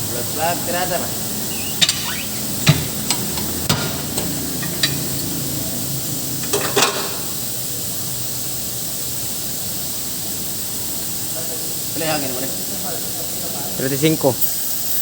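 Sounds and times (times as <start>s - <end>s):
steady hiss: 0.0s - 15.0s
sharp knocks and clicks: 1.8s - 5.0s.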